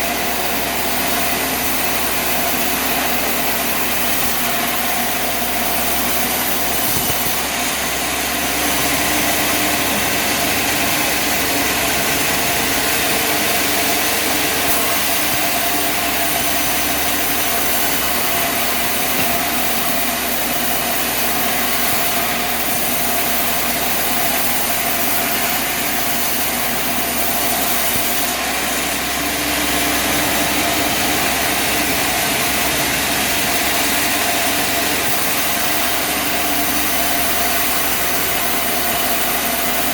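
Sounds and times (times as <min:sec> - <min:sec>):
machinery engine running: 0:00.0 - 0:39.9.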